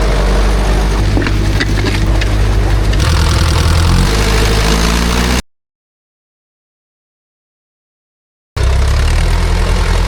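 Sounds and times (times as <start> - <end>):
tractor diesel engine drone: 0.0 - 5.4, 8.6 - 10.0.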